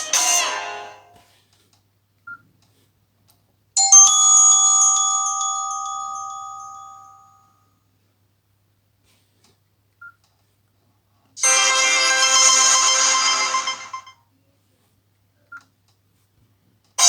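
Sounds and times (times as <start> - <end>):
phone ringtone melody: 0.0 - 1.1, 5.2 - 7.5, 11.4 - 14.1
bell-like chime tone: 3.8 - 7.6.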